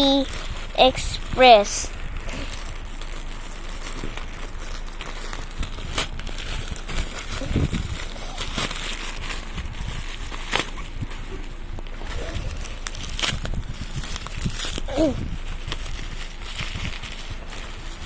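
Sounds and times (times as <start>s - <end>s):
packaging crinkling and tearing: 0.0s - 18.0s.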